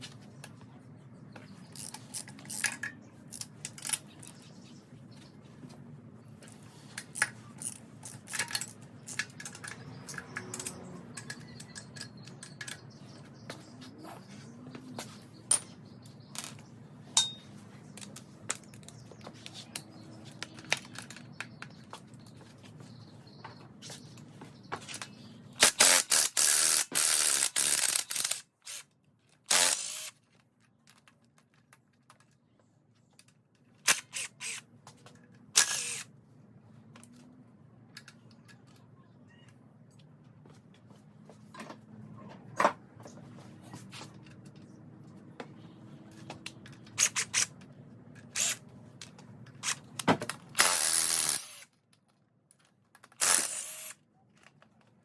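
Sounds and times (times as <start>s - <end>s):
metal tool clicks and clanks: 6.4s - 12.9s
power tool rattling: 25.6s - 28.8s, 29.5s - 30.1s, 48.3s - 48.6s, 49.6s - 51.6s, 53.2s - 54.0s.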